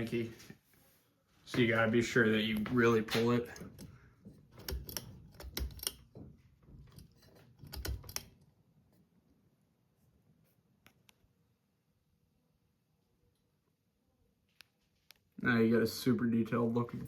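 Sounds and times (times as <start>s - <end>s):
fan pull-chain switch clicking: 4.6s - 6.1s.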